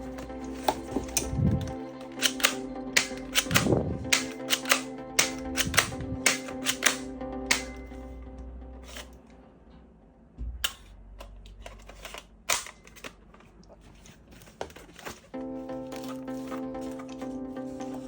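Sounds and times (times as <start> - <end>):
sharp clicks: 1.1 - 7.8
plastic toy parts clattering: 11.2 - 17.2.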